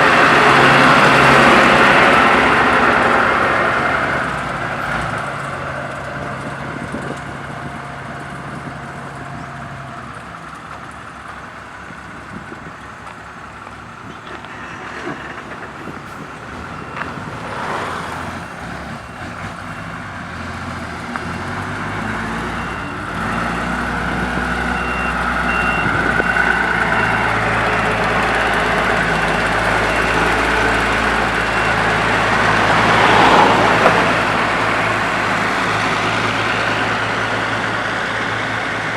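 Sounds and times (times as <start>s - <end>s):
diesel road roller running: 0.0s - 38.9s
reversing beeper short beeps: 24.5s - 35.0s.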